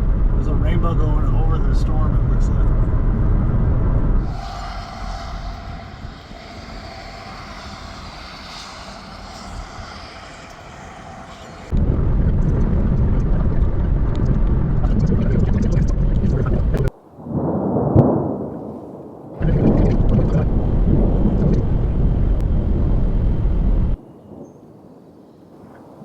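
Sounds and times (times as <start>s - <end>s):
low rumbling wind buffet: 0.0s - 24.0s
wind gusting over microphone: 0.0s - 24.0s.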